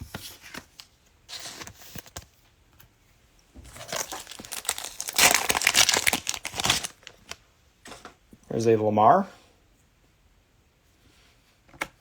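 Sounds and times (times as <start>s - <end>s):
card pack wrapper crinkling: 3.7s - 7.4s.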